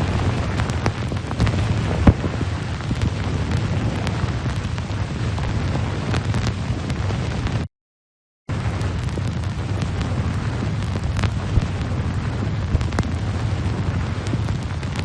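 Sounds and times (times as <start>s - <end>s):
crackles: 0.0s - 7.7s, 8.5s - 15.0s
low rumbling roar: 8.5s - 14.9s.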